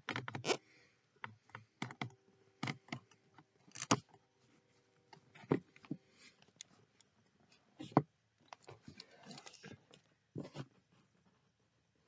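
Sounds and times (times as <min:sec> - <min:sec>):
faint steady hum: 0:00.0 - 0:12.0
plastic clicks taps and scrapes: 0:01.2 - 0:04.1.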